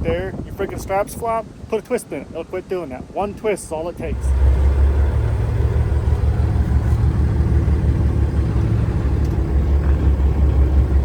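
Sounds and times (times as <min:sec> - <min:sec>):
truck engine rumbling: 0:04.0 - 0:11.0.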